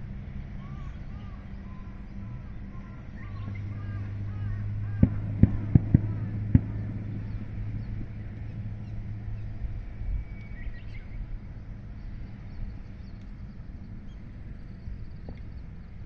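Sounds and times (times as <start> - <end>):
steady low rumble: 0.0 - 16.0
faint bird chirps: 0.5 - 5.0, 6.2 - 11.3.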